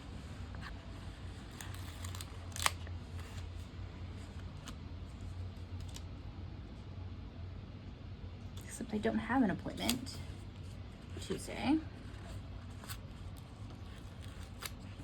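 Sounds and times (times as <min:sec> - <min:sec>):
steady low hum: 0:00.0 - 0:15.0
paper sheets clicking: 0:01.4 - 0:03.5.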